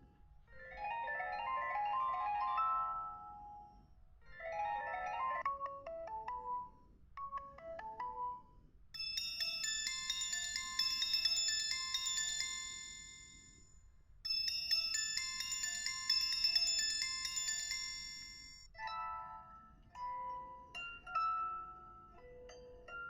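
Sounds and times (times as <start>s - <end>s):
chiming bell-like ringtone melody: 0.7s - 3.8s, 4.4s - 23.0s
lower-pitched ringtone melody: 4.6s - 13.5s.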